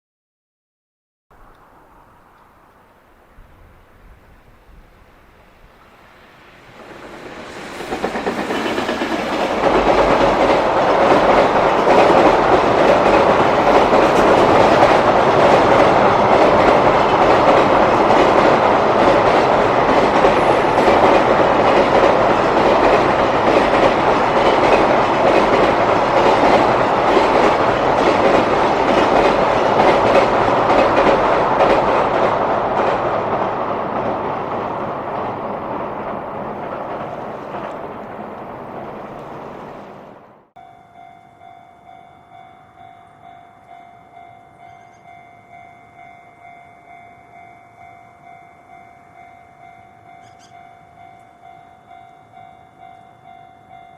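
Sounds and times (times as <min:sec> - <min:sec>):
freight train wheels clattering: 0:06.6 - 0:39.8.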